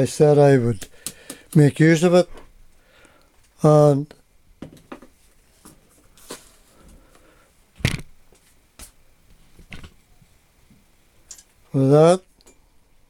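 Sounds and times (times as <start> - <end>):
hard objects knocking and clicking: 7.8 - 8.2.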